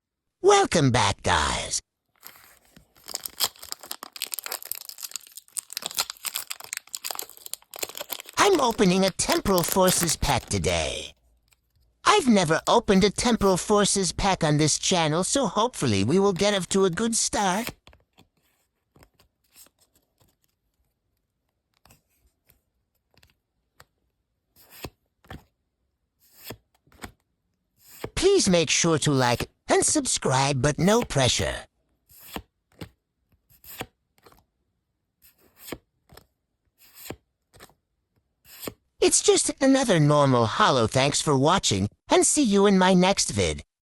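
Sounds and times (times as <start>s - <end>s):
foil wrapper crinkling: 2.2s - 10.6s
cards rustling: 2.2s - 11.7s, 16.0s - 17.8s.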